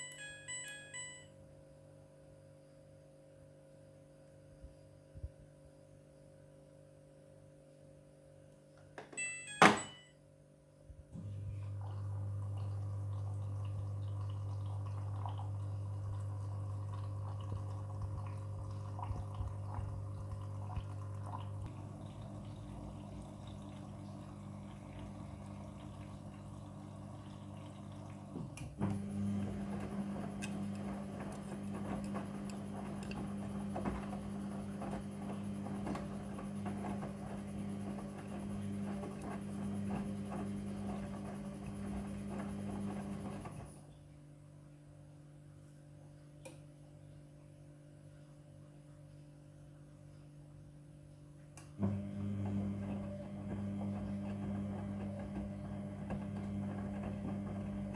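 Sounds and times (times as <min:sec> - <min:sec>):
washing machine hum: 0:00.0 - 0:01.4, 0:08.9 - 0:10.1, 0:10.9 - 0:57.9
water splashing in washer drum: 0:11.3 - 0:43.8, 0:51.8 - 0:57.9.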